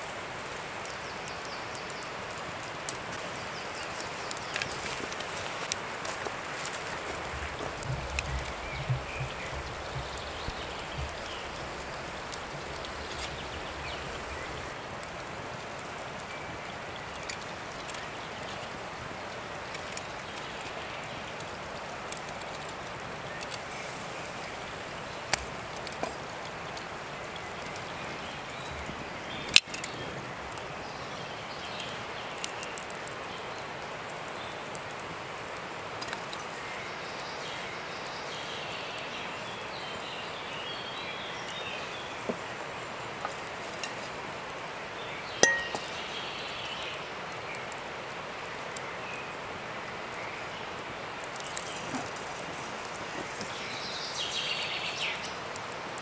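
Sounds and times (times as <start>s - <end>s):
steady background hiss: 0.0s - 56.0s
faint chirping: 7.4s - 14.8s
metallic clinks of cooking utensils: 45.4s - 45.9s.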